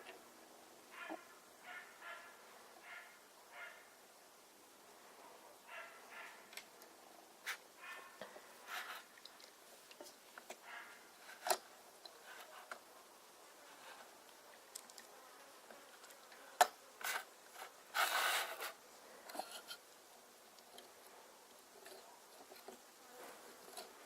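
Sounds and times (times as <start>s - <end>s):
scraping rustle: 7.4s - 9.2s, 11.2s - 12.9s, 13.5s - 14.3s, 15.8s - 19.9s.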